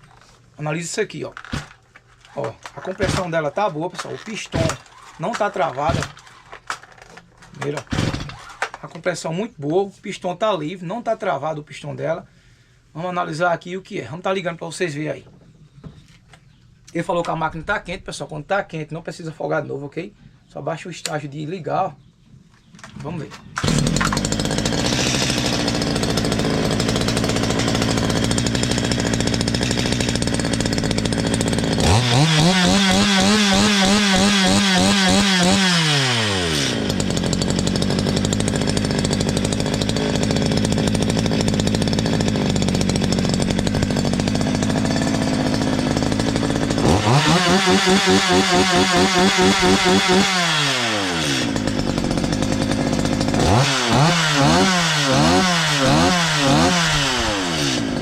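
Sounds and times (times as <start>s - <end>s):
chainsaw engine idling and revving: 2.8s - 6.2s, 7.6s - 8.5s, 23.6s - 58.0s.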